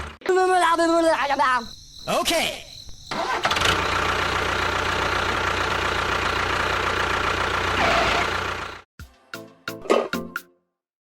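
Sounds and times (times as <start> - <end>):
engine running with knocking hum: 3.4 - 8.9.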